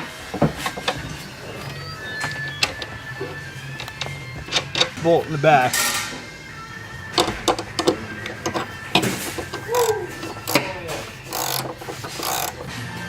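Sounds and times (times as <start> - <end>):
hand ratchet clicking: 3.8 - 5.0, 7.2 - 12.7.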